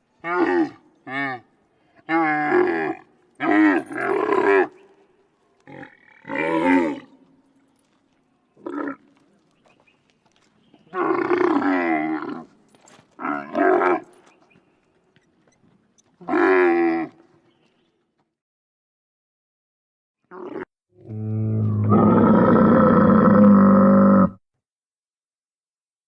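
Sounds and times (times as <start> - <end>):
camels bellowing: 0.2 - 4.8, 5.6 - 7.2, 10.9 - 14.3, 16.2 - 17.3.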